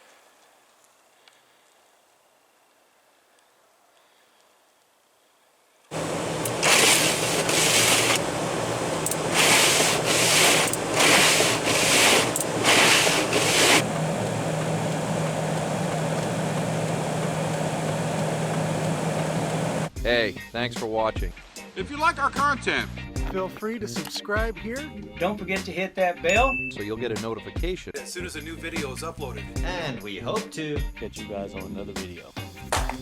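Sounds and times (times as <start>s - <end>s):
footsteps crunching in snow: 5.9s - 19.9s
steady low hum: 5.9s - 20.0s.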